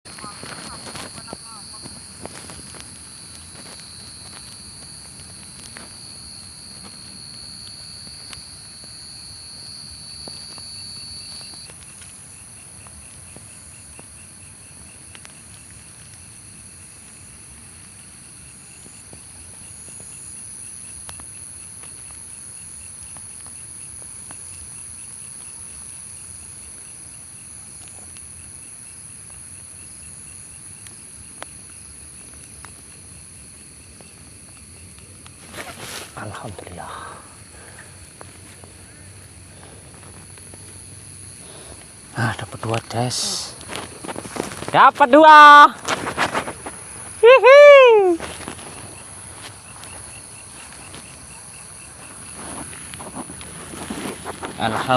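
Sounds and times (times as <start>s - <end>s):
soft footsteps: 0.0s - 9.0s, 37.4s - 42.1s, 42.8s - 45.1s, 45.7s - 47.2s, 48.2s - 54.9s
cricket trill: 0.0s - 54.9s
low insect drone: 0.1s - 54.9s.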